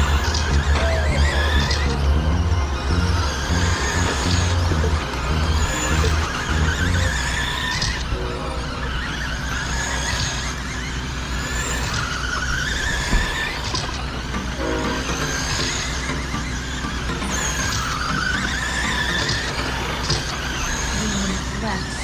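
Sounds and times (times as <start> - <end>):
rc truck motors whining: 0.0 - 22.0
steady rumble: 0.0 - 22.0.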